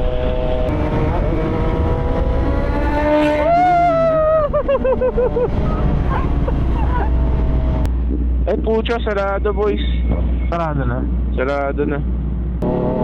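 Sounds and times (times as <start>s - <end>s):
motorcycle engine revving: 0.0s - 7.9s, 12.6s - 13.0s.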